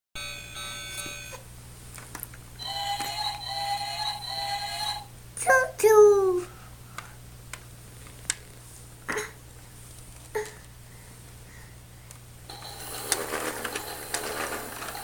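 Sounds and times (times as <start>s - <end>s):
toy train electronic tones: 0.2s - 1.4s, 2.6s - 5.1s, 12.5s - 15.0s.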